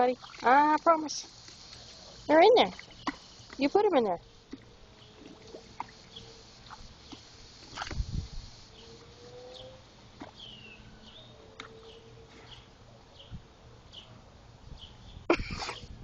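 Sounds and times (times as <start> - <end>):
small birds chirping: 0.4 - 7.3.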